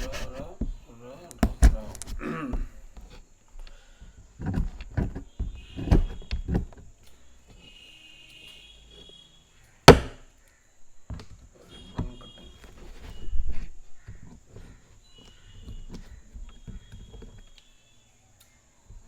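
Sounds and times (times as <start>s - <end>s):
sharp loud snap: 9.9s - 10.2s.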